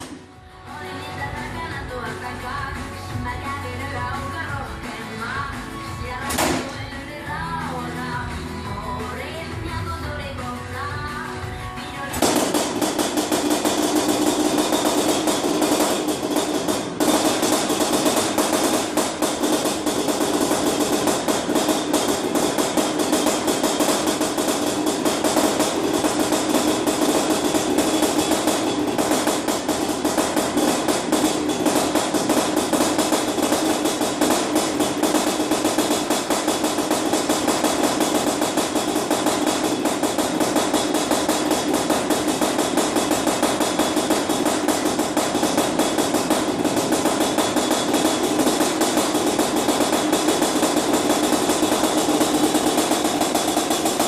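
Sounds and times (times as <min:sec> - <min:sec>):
two-stroke engine running: 0:12.1 - 0:54.0.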